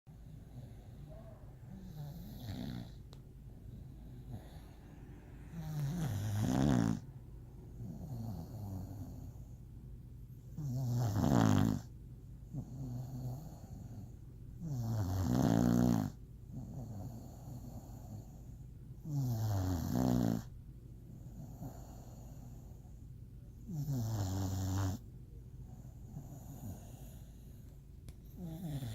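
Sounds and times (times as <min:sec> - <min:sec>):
dog snoring: 0:00.1 - 0:09.6, 0:10.5 - 0:23.0, 0:23.6 - 0:28.9
dog breathing: 0:00.1 - 0:09.8, 0:21.1 - 0:23.1, 0:25.6 - 0:28.9.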